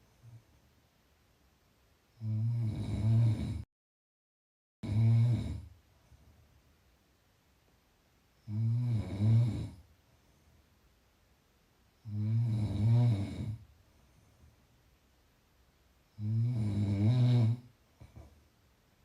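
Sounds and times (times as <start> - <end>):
person snoring: 2.2 - 3.7, 4.8 - 5.7, 8.4 - 9.8, 12.0 - 13.7, 16.1 - 17.7.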